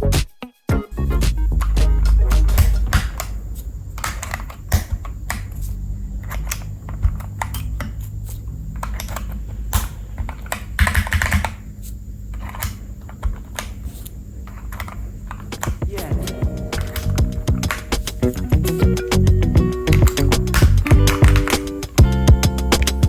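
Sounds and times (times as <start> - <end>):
mechanical keyboard keys clacking: 10.3 - 11.6, 14.6 - 23.0.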